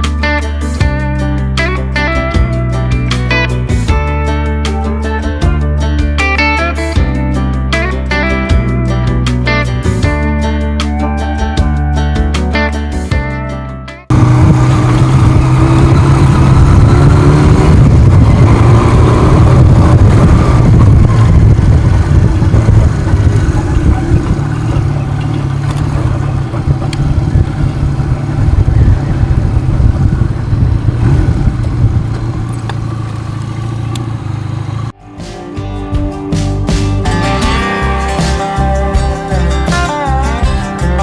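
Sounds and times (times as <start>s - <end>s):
vehicle engine accelerating: 14.1s - 35.0s.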